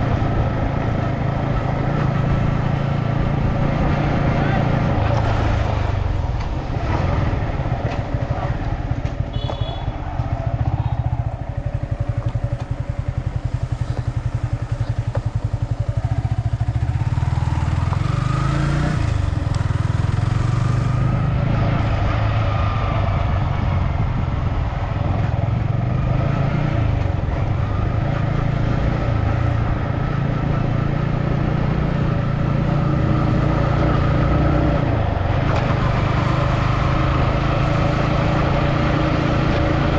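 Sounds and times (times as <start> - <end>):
motorbike engine running: 6.8 - 21.3.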